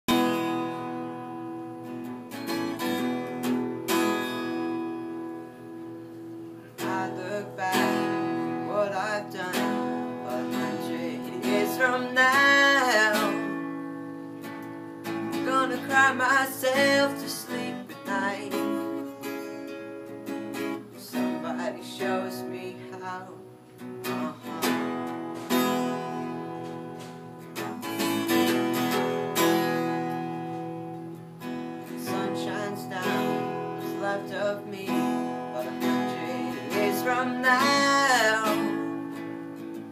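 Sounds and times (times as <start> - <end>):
acoustic guitar strumming: 0.1 - 39.9.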